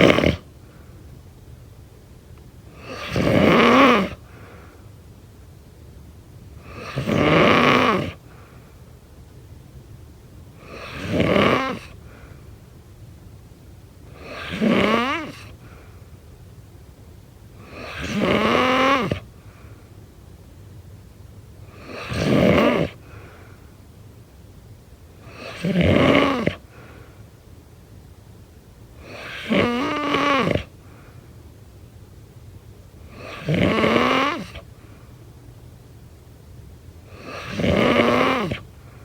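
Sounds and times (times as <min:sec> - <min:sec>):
person snoring: 0:00.0 - 0:00.4, 0:02.8 - 0:04.2, 0:06.6 - 0:08.2, 0:10.6 - 0:11.9, 0:14.2 - 0:15.5, 0:17.6 - 0:19.2, 0:21.7 - 0:23.2, 0:25.2 - 0:26.7, 0:29.0 - 0:30.7, 0:33.1 - 0:34.6, 0:37.1 - 0:38.7.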